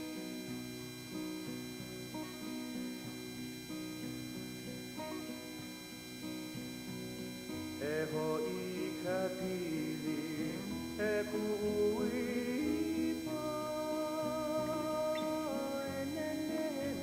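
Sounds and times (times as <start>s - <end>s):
acoustic guitar: 0.0s - 17.0s
person singing: 7.8s - 17.0s.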